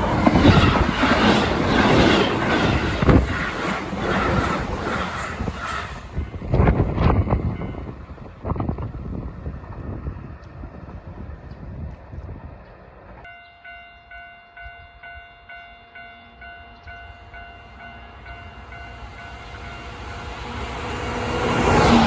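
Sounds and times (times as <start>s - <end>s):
train running noise: 0.0s - 22.0s
level-crossing warning bell: 6.2s - 8.0s, 13.2s - 20.6s.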